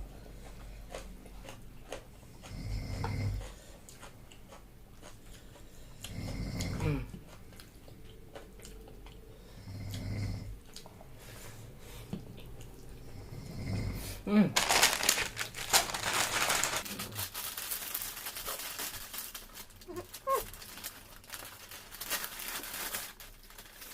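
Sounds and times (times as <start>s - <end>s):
slow low snores: 2.4s - 3.5s, 6.0s - 7.1s, 9.3s - 10.6s, 13.0s - 14.3s
chewing clicks: 7.3s - 9.3s.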